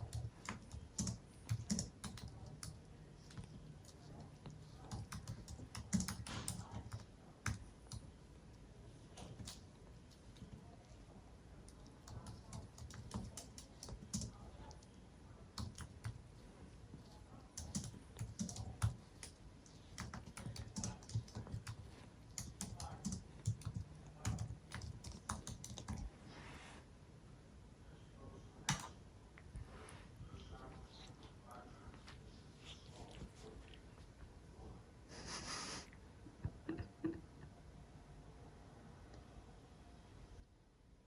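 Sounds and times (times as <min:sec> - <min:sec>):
computer keyboard typing: 0:00.0 - 0:02.8, 0:03.4 - 0:08.1, 0:11.7 - 0:14.8, 0:15.5 - 0:16.3, 0:17.4 - 0:26.1.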